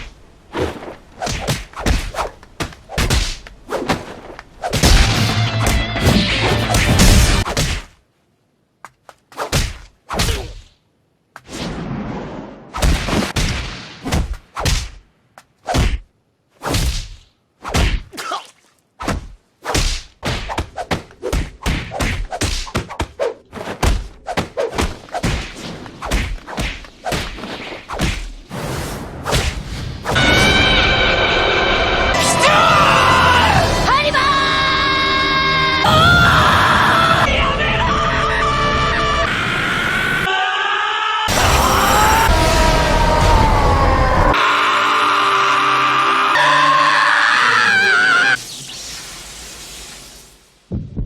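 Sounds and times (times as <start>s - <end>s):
swishes of fast blows: 0.0s - 5.2s, 19.0s - 30.2s.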